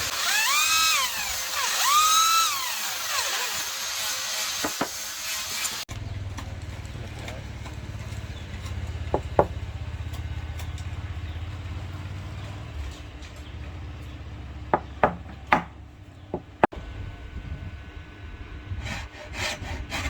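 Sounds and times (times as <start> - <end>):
low motor hum: 5.9 - 20.0.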